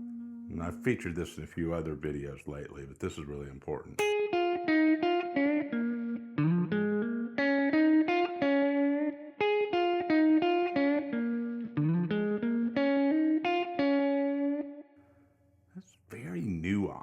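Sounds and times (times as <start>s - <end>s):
electric guitar lick: 4.0s - 14.8s.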